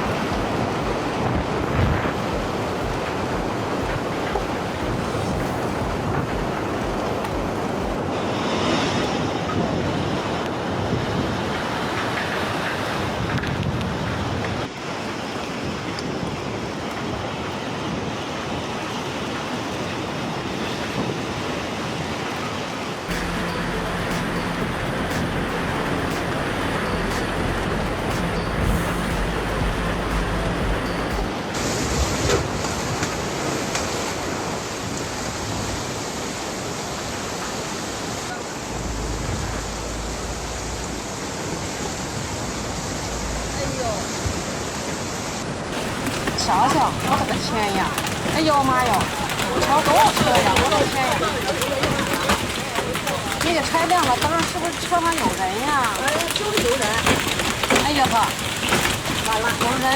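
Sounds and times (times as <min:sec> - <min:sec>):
wind on microphone: 0:00.0 - 0:14.8
floodwater rushing: 0:00.0 - 0:59.9
low rumble: 0:23.1 - 0:31.3, 0:38.4 - 0:43.6.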